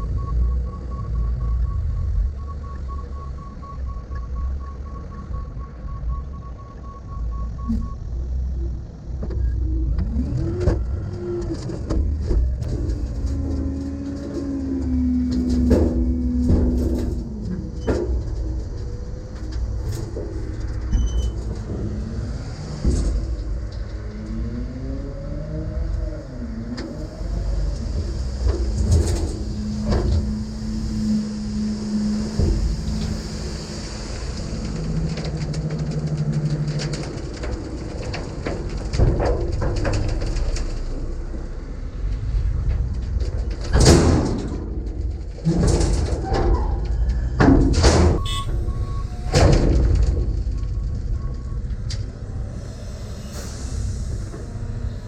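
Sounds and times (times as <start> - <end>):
diesel engine rumbling: 0.0 - 55.0
rising whine: 7.1 - 37.6, 48.2 - 55.0.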